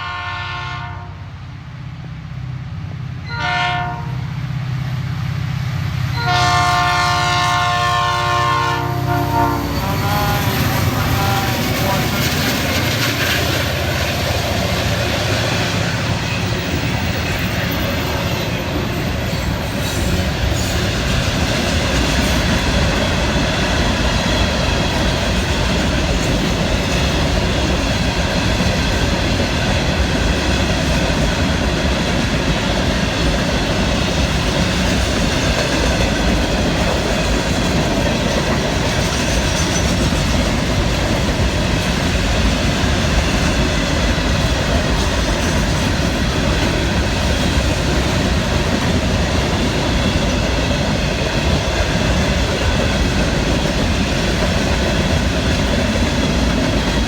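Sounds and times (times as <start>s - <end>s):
freight train wheels rumbling: 0.0s - 57.0s
clickety-clack over rail joints: 9.6s - 57.0s.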